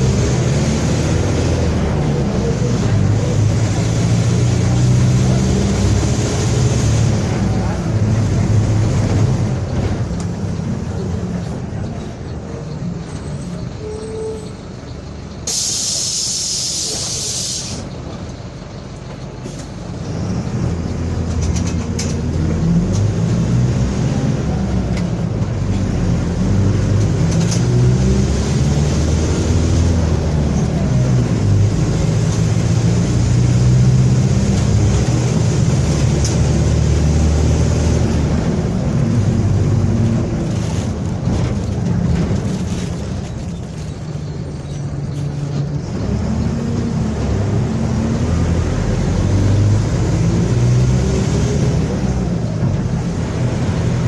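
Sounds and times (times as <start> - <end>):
diesel bus engine pulling away: 0.0 - 54.0
air brake hiss: 15.5 - 17.9.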